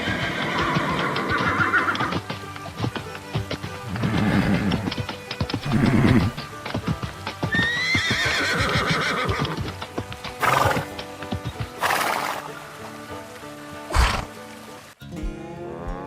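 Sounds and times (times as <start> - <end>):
cartoon horse whinnying: 0.0 - 2.1, 5.6 - 6.4, 7.5 - 9.6
background music: 0.0 - 16.0
hooves clip-clopping: 0.0 - 16.0.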